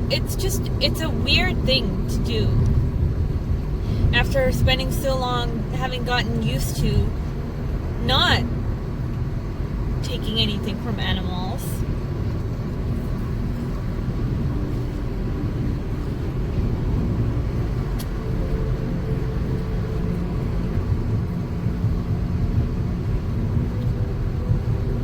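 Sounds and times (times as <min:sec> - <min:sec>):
car rumble from inside cabin: 0:00.0 - 0:25.0.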